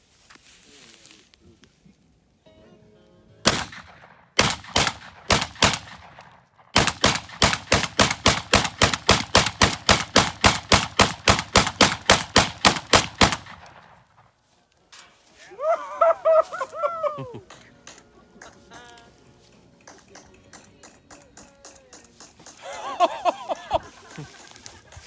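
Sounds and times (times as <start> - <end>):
shotgun shots: 3.4 - 14.3.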